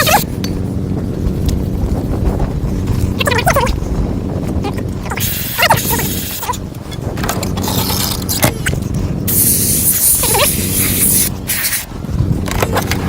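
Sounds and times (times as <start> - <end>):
aerosol spray hissing: 9.3 - 11.9.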